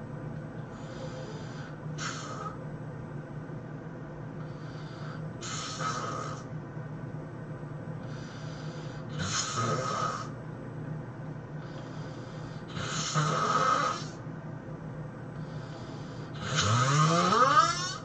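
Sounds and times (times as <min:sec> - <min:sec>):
quiet breath: 0:00.6 - 0:02.7, 0:04.4 - 0:06.5, 0:08.0 - 0:10.4, 0:11.6 - 0:13.1, 0:15.3 - 0:16.5
person snoring loudly: 0:00.8 - 0:02.6, 0:05.0 - 0:06.5, 0:09.1 - 0:10.3, 0:12.7 - 0:14.2, 0:15.6 - 0:18.0.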